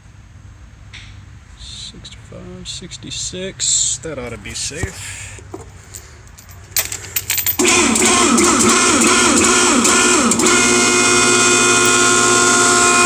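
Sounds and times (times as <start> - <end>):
hydraulic machine whining: 7.6 - 13.0.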